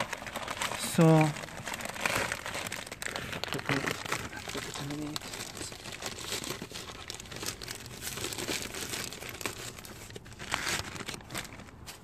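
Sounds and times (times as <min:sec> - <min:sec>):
air filter crinkling: 0:00.0 - 0:12.0.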